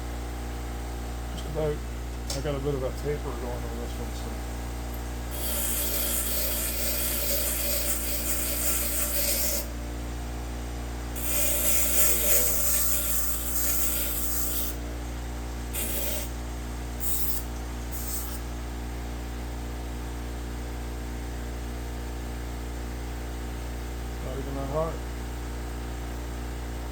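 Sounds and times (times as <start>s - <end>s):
grinder motor humming: 3.3s - 9.9s, 11.0s - 18.5s
metal blade grinding: 5.3s - 9.7s, 11.2s - 14.8s, 15.7s - 16.4s, 17.0s - 18.4s.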